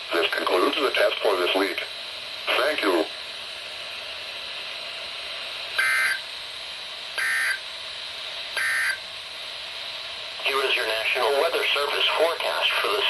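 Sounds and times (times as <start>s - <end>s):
radio static: 0.1s - 3.1s, 10.4s - 13.0s
buzzy two-tone data bursts: 5.8s - 6.2s, 7.2s - 7.6s, 8.6s - 9.0s.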